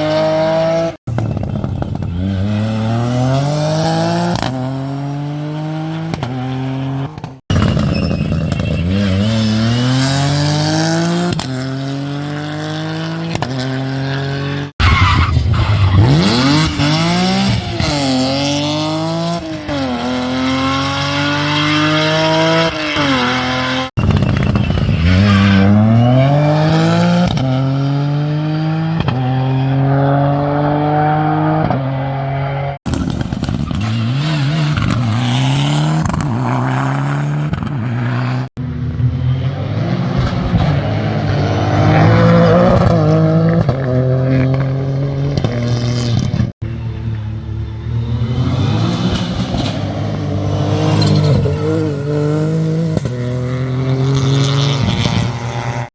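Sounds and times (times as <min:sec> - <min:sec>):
rally car engines revving: 0:00.0 - 0:55.9.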